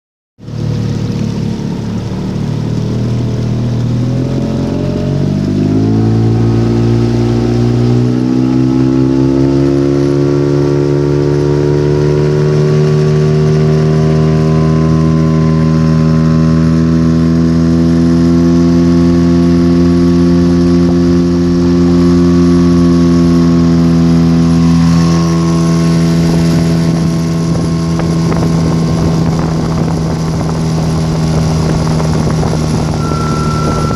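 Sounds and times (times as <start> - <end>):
outboard motor running: 0.4 - 33.9
faint high whistle: 33.0 - 33.9.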